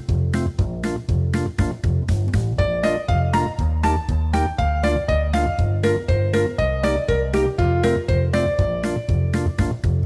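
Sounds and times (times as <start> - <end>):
bass beat: 0.0 - 10.0
keyboard melody: 0.0 - 10.0.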